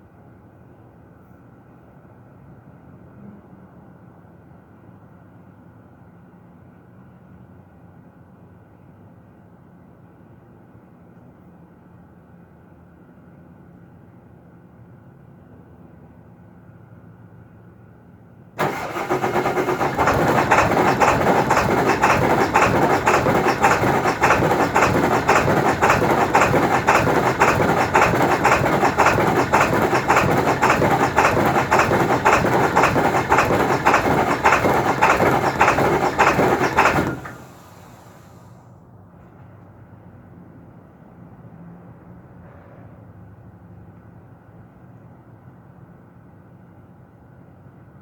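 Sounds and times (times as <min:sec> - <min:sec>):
diesel engine cranking on starter: 0:18.6 - 0:38.5.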